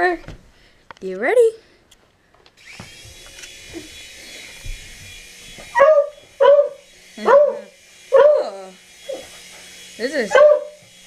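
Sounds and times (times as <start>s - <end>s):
toy helicopter motor whirring: 2.6s - 11.0s
dog barking: 5.7s - 8.5s, 10.3s - 10.8s.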